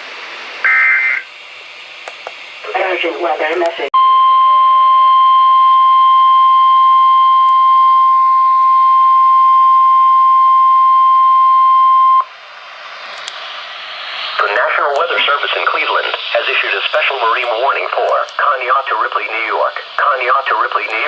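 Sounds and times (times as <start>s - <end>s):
loud steady alarm beep: 0.7s - 1.3s, 4.0s - 12.3s
faint radio hiss: 2.2s - 3.9s, 13.0s - 21.0s.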